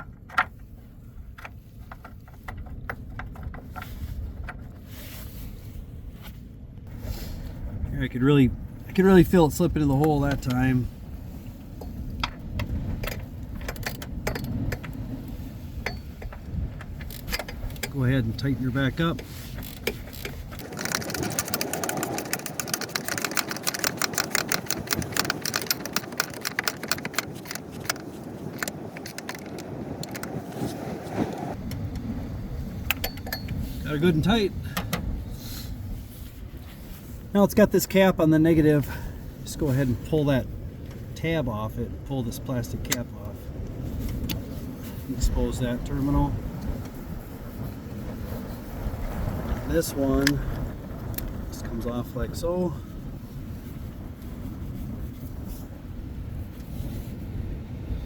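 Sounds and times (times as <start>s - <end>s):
steady low rumble: 0.0s - 58.0s
socket ratchet clicking: 19.7s - 28.0s.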